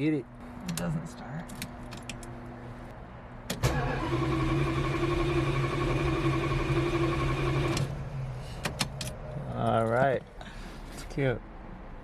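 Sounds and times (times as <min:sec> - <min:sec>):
starter motor cranking engine: 0:03.6 - 0:08.0.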